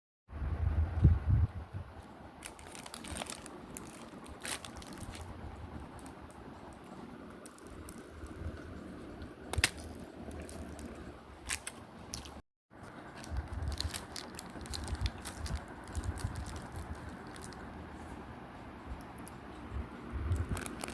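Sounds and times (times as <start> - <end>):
packaging crinkling: 2.4 - 17.8, 20.3 - 20.9
person chewing and crunching: 7.5 - 12.4, 13.1 - 17.6.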